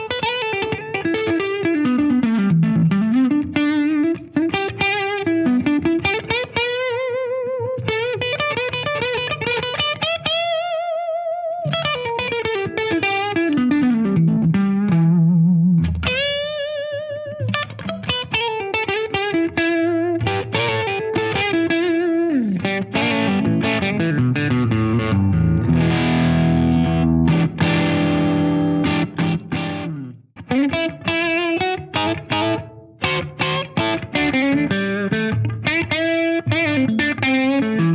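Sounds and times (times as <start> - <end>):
distorted electric guitar: 11.6 - 37.9.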